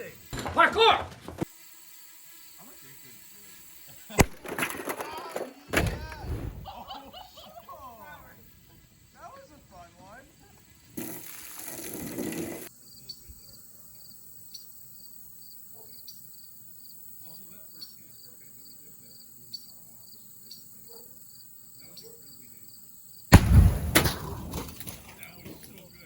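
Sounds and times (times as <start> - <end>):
crickets chirping: 0.0 - 26.0
loud blast with low rumble: 23.3 - 24.4.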